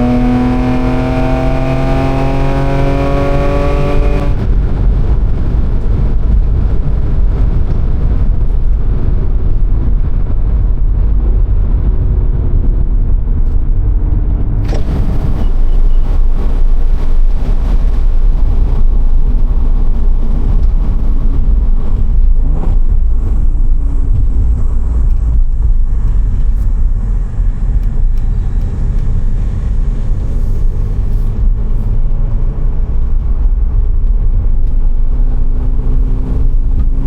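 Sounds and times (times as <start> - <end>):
car engine accelerating through gears: 0.0 - 5.1, 13.4 - 37.0
road noise inside car: 0.0 - 37.0.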